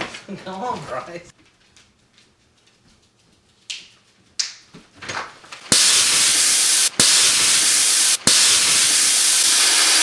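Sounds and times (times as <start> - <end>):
compressed air hissing: 5.7 - 10.0.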